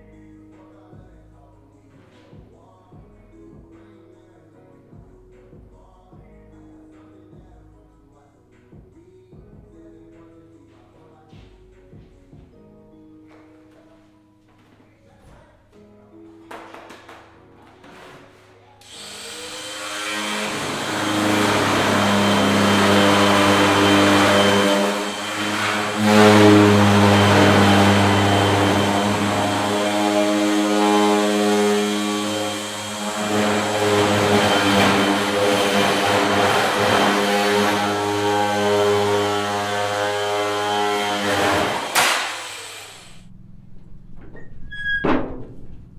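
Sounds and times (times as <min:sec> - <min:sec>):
power tool motor running: 0:18.8 - 0:43.3.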